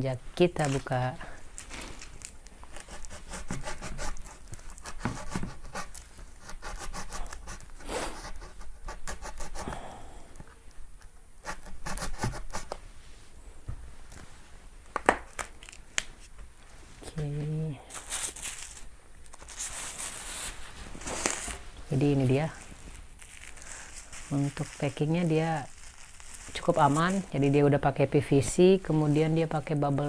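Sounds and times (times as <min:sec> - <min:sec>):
packing tape and plastic tearing: 0:01.5 - 0:08.4, 0:15.0 - 0:16.3, 0:17.9 - 0:21.6, 0:22.2 - 0:27.3.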